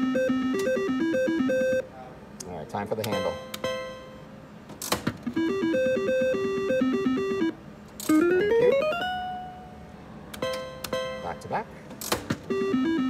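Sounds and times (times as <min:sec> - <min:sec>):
beeping electronic tune: 0:00.0 - 0:01.8, 0:05.3 - 0:09.7, 0:12.5 - 0:13.0
slot machine reels clunking: 0:00.0 - 0:01.8, 0:03.0 - 0:09.8, 0:10.4 - 0:13.0
slot machine handle clack: 0:10.4 - 0:13.0.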